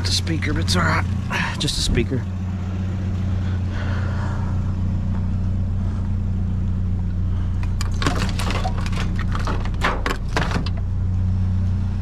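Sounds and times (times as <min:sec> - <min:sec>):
vehicle engine idling: 0:00.0 - 0:12.0
clattering knocks and rattles: 0:07.6 - 0:10.9.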